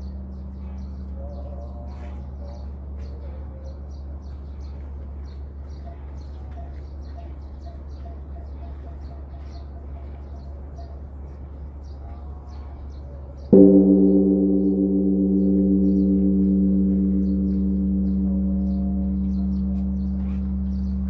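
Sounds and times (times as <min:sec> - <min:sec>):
large temple bell ringing: 0:13.5 - 0:21.0.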